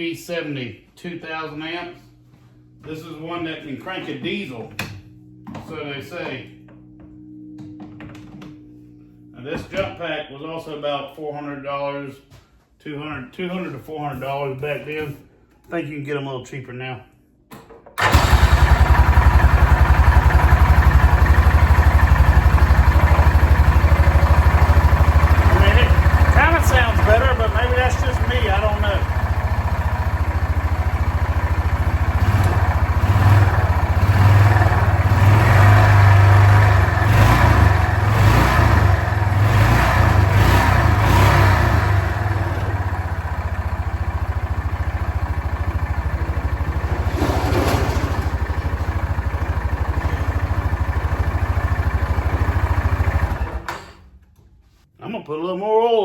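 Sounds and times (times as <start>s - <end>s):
engine running and idling: 18.0s - 53.8s.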